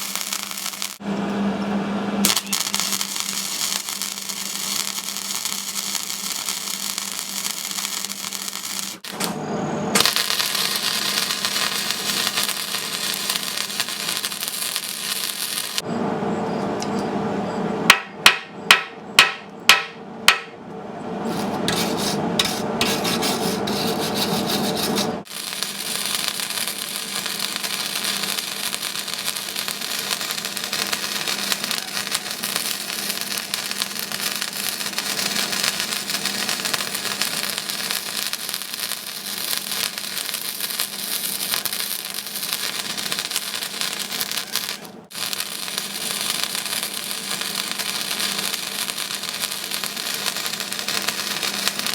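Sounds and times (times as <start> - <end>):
welding arc crackling: 0.0 - 1.0, 2.2 - 9.4, 10.0 - 15.8, 21.3 - 51.9.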